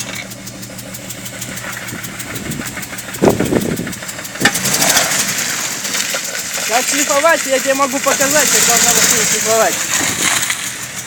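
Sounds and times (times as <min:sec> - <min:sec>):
car engine running rough: 0:00.0 - 0:11.0
rhythmic engine knock: 0:00.0 - 0:11.0.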